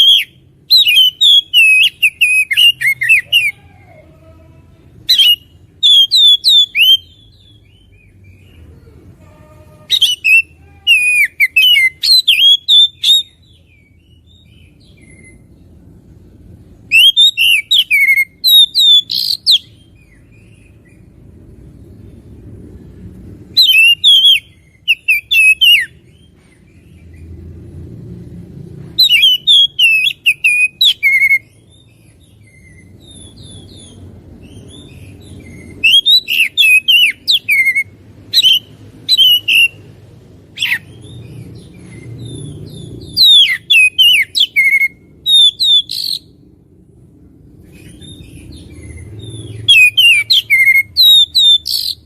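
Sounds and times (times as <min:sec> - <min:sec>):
bird singing whistled notes: 0:00.0 - 0:03.6, 0:05.1 - 0:08.5, 0:09.9 - 0:15.6, 0:16.9 - 0:21.1, 0:23.5 - 0:27.0, 0:29.0 - 0:39.9, 0:40.5 - 0:46.4, 0:47.7 - 0:52.0.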